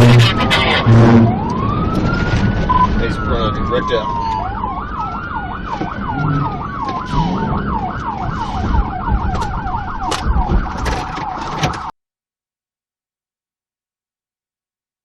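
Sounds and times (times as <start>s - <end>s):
engine and road noise: 0.0s - 11.9s
falling siren wail: 0.0s - 11.9s
police siren yelping: 0.0s - 11.9s.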